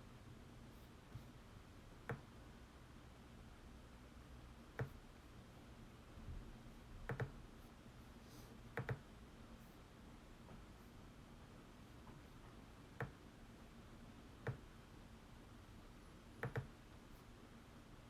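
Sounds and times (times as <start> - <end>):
faint steady hum: 0.0 - 18.0
computer mouse clicking: 4.8 - 5.0, 7.1 - 7.4, 8.7 - 9.0, 14.4 - 14.6, 16.4 - 16.7.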